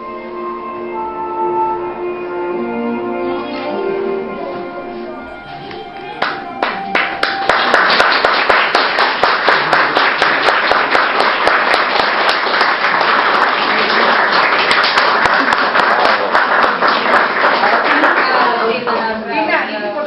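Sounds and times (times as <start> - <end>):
audience applauding: 5.7 - 19.5.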